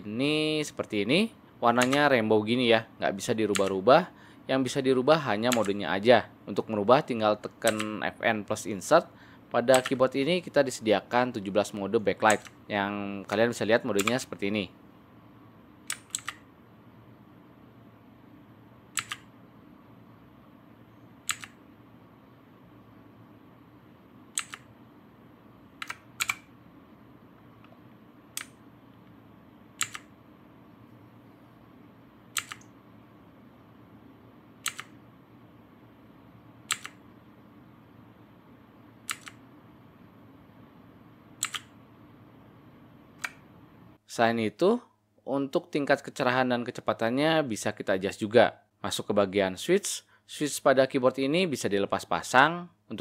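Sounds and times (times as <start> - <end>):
faint steady hum: 0.0 - 53.0
mechanical keyboard switches clicking: 1.8 - 2.1, 3.5 - 3.8, 5.5 - 5.8, 7.6 - 7.9, 9.7 - 10.0, 12.2 - 12.6, 14.0 - 14.2, 15.9 - 16.4, 18.9 - 19.3, 21.2 - 21.6, 24.3 - 24.7, 25.8 - 26.5, 29.8 - 30.1, 32.3 - 32.7, 34.6 - 35.0, 36.7 - 37.0, 39.1 - 39.4, 41.4 - 41.7.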